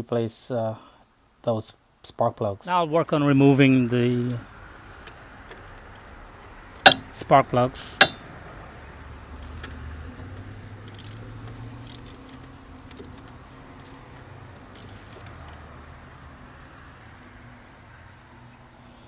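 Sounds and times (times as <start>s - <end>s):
socket wrench metallic clicks: 6.7s - 7.2s, 9.4s - 15.6s.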